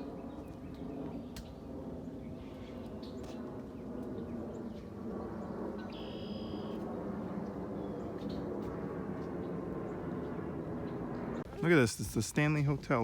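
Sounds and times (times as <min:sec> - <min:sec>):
low background rumble: 0:00.0 - 0:13.0
whistled bird call: 0:05.9 - 0:06.8.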